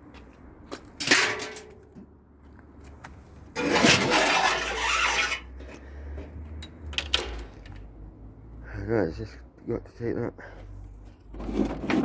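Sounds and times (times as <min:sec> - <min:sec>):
loud scraping rush: 0:03.6 - 0:05.7.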